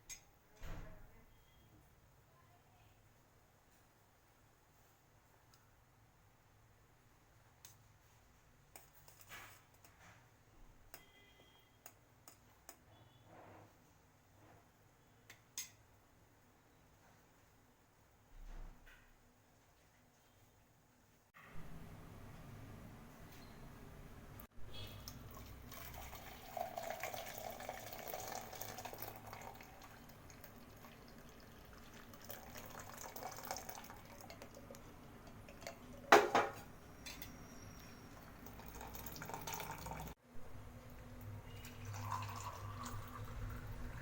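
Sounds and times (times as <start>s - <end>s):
liquid pouring and dripping: 25.0s - 36.6s, 38.1s - 40.2s, 41.5s - 44.0s.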